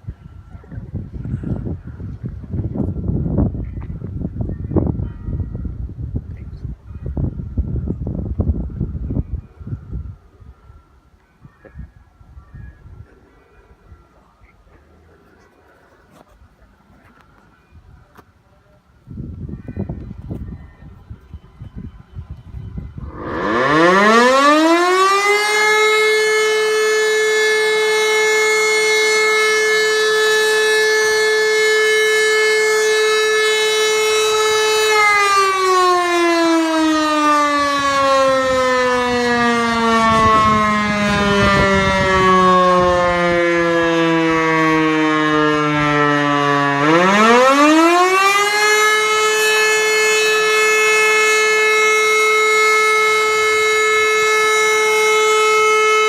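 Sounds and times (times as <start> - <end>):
siren wailing: 19.8 - 56.0.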